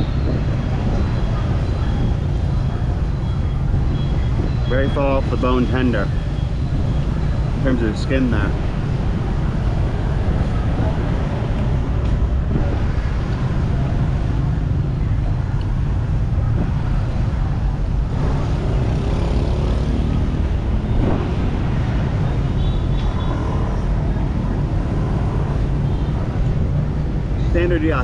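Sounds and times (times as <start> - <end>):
street traffic rumble: 0.0 - 28.0
wind buffeting microphone: 0.0 - 28.0.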